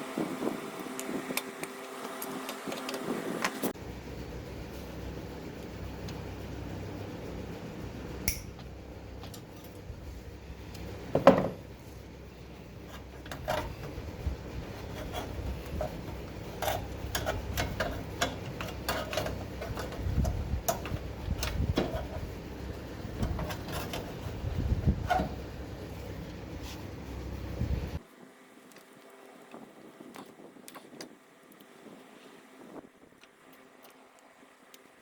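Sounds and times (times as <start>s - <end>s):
hand tools clicking and tapping: 14.8s - 22.3s.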